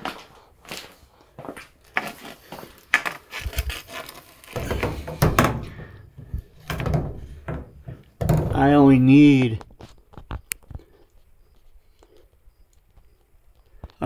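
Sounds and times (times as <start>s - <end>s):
objects knocking and rubbing: 3.0s - 8.8s
heavy knock: 4.6s - 8.8s.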